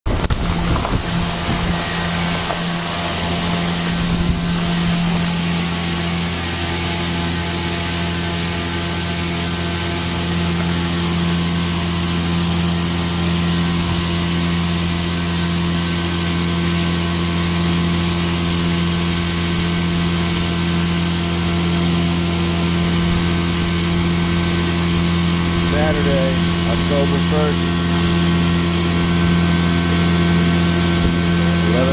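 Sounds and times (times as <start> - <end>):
mechanical drone: 0.1 - 31.9.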